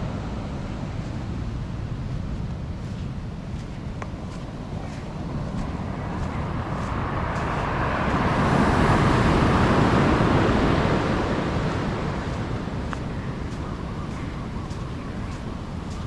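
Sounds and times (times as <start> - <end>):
road vehicle passing by: 4.0 - 16.0.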